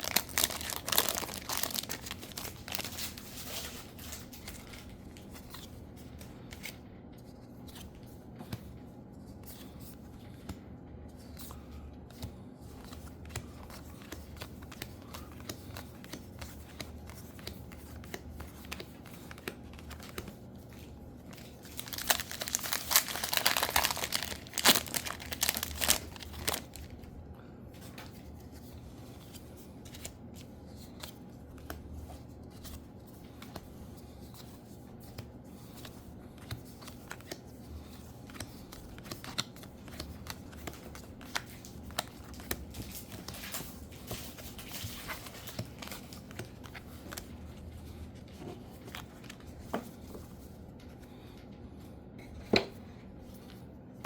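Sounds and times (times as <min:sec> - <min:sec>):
wrappers crinkling and tearing: 0:00.0 - 0:04.9, 0:21.4 - 0:27.0.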